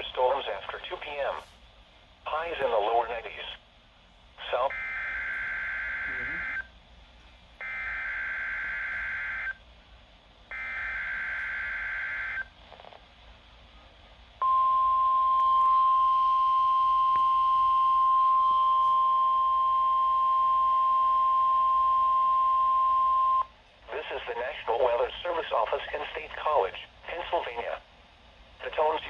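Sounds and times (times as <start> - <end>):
steady warning tone: 4.4 - 6.8, 7.6 - 9.6, 10.5 - 12.6, 14.4 - 27.8.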